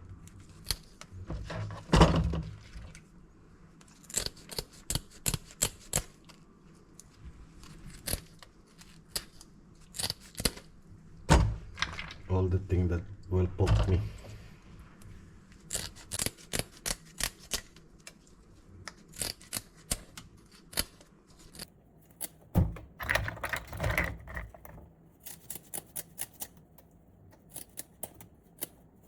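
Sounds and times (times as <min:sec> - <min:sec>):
fins being snipped: 0:03.9 - 0:06.4, 0:18.9 - 0:22.5, 0:25.2 - 0:29.0.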